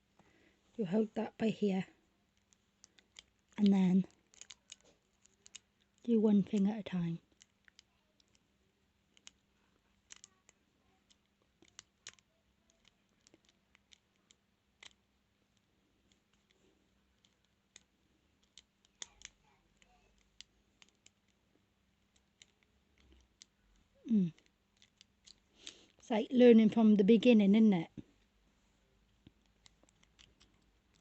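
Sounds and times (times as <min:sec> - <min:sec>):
lock pick clicking and scraping: 0:10.0 - 0:10.5.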